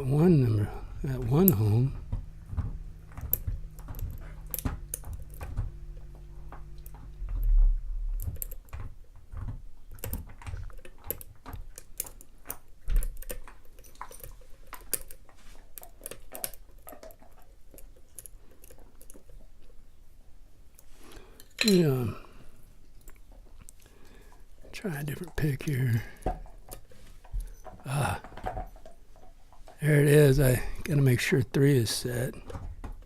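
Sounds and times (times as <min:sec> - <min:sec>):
dull bumps: 0:00.0 - 0:10.7
lock pick clicking and scraping: 0:00.3 - 0:19.4.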